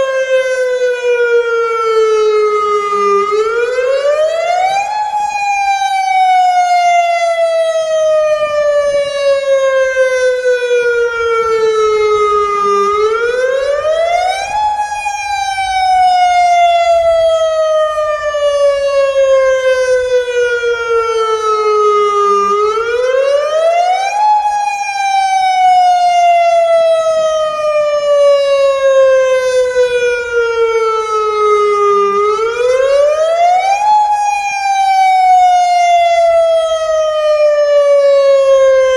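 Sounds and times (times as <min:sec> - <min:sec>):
warning siren wailing: 0:00.0 - 0:38.9.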